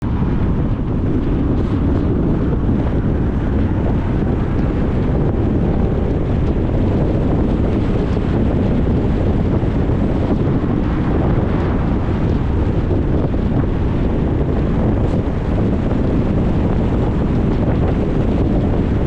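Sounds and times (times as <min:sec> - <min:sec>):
car road noise: 0:00.0 - 0:19.0.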